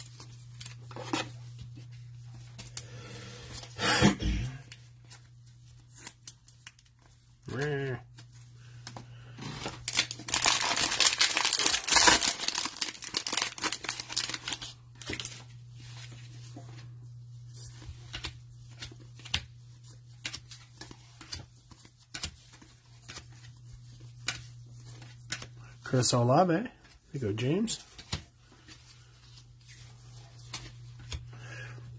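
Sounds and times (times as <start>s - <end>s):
cellophane wrapper tearing and crinkling: 9.6s - 15.4s
cards clicking and sliding: 20.2s - 23.3s.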